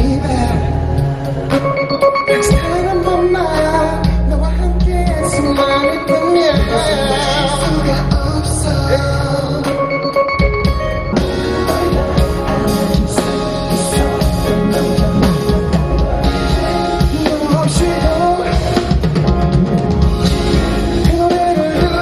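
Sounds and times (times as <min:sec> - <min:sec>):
person singing: 0:00.0 - 0:10.3, 0:11.2 - 0:19.2, 0:20.5 - 0:22.0
rock pop ballad with band: 0:00.0 - 0:22.0.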